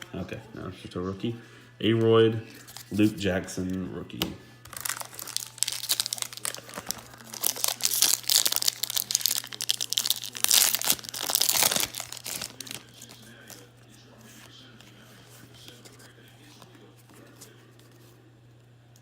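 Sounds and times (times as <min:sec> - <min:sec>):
card pack wrapper crinkling and tearing: 0:04.6 - 0:13.7.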